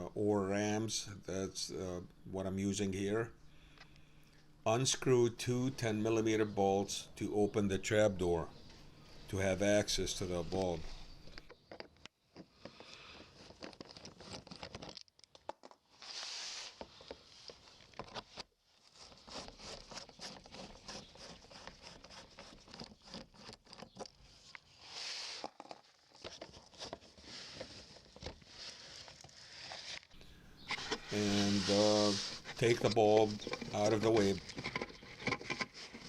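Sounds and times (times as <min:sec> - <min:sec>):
tool hissing scrapes: 0:16.0 - 0:16.8, 0:24.7 - 0:25.6, 0:30.6 - 0:34.5.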